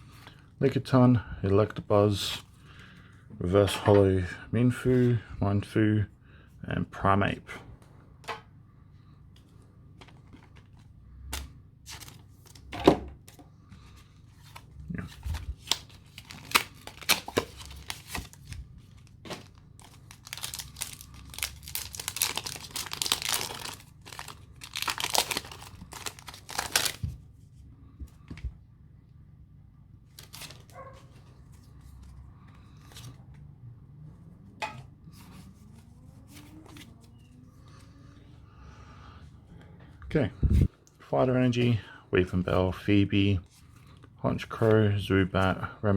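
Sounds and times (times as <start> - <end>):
foil wrapper tearing and crinkling: 15.3 - 18.6, 19.4 - 27.0.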